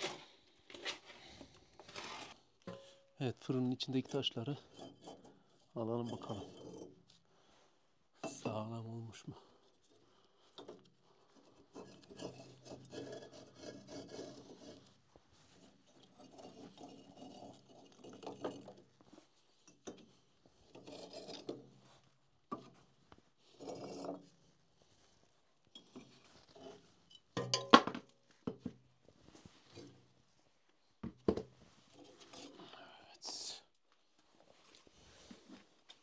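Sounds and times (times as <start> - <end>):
stones scraping on floor: 0.0 - 2.4, 23.5 - 24.2.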